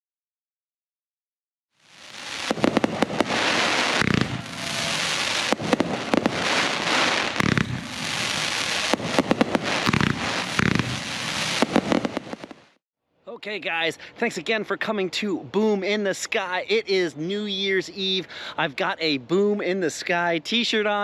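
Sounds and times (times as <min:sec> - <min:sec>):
fireworks crackling hiss: 0:01.8 - 0:12.8
fireworks sharp bangs: 0:02.0 - 0:12.8.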